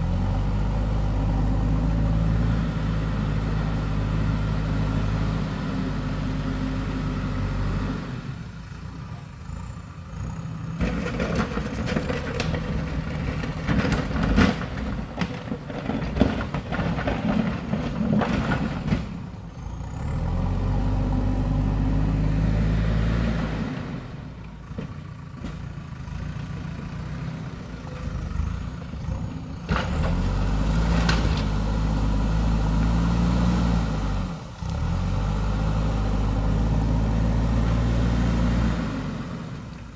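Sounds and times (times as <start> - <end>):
diesel engine under load: 0.0 - 39.9
digging clatter and knocks: 10.8 - 19.4.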